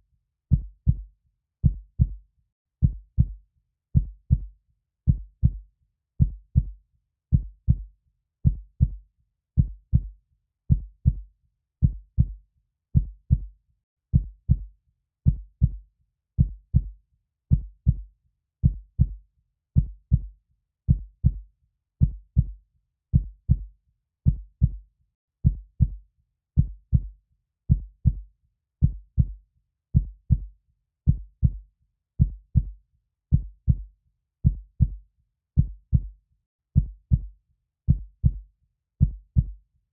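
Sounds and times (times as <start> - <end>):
heartbeat lub-dub: 6.2 - 7.9, 14.2 - 14.7, 17.5 - 19.2, 23.2 - 23.7, 24.3 - 24.8, 28.8 - 29.4, 30.0 - 30.5, 31.1 - 31.6, 32.2 - 35.0, 35.6 - 36.1, 36.8 - 37.3, 37.9 - 38.4, 39.0 - 39.6.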